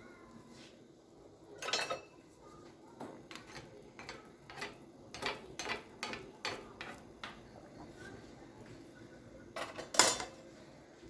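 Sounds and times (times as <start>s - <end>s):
kitchenware ringing clink: 1.6s - 2.2s, 9.6s - 10.4s.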